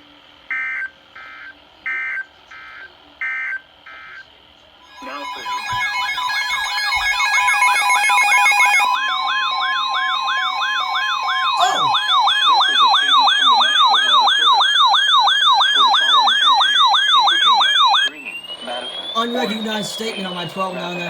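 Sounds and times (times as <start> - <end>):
electronic siren warbling: 4.8 - 21.0
steady electronic tone: 4.8 - 21.0.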